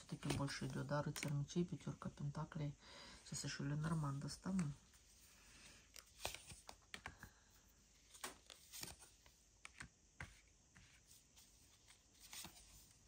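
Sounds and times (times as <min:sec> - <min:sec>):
cards clicking and tapping: 0:00.1 - 0:01.4, 0:05.9 - 0:07.4, 0:09.6 - 0:10.9.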